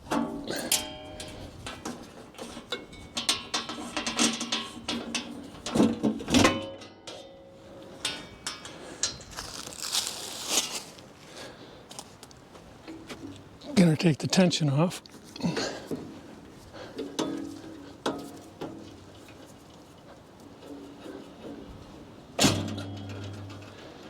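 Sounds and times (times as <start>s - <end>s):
metal clicks and clanks: 0.1s - 9.5s, 16.9s - 19.4s, 22.4s - 24.0s.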